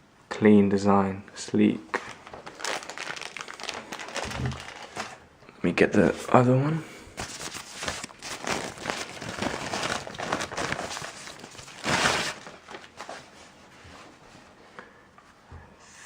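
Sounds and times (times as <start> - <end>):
packaging rustling and crinkling: 1.9 - 5.2, 7.2 - 14.1.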